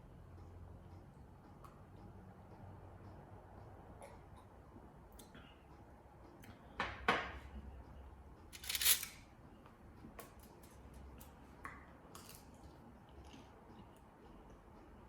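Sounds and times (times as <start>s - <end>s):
mouth clicks while eating: 4.0s - 5.5s.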